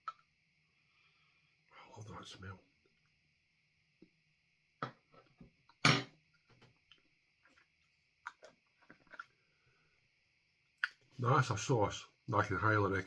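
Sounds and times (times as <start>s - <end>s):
lip smacks: 10.8s - 11.1s.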